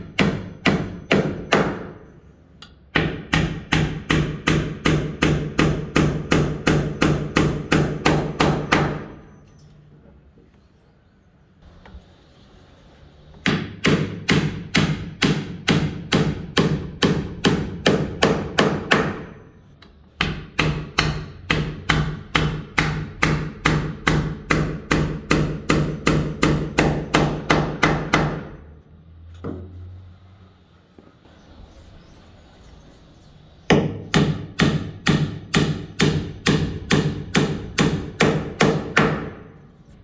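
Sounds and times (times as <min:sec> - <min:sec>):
hammer striking nail into wood: 0:00.0 - 0:02.0, 0:02.9 - 0:09.2, 0:13.4 - 0:19.4, 0:20.2 - 0:28.6, 0:33.7 - 0:39.6.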